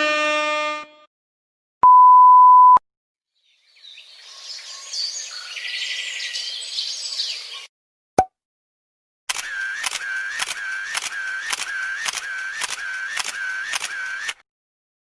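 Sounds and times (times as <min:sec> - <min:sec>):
birds chirping and singing: 0:03.4 - 0:07.7.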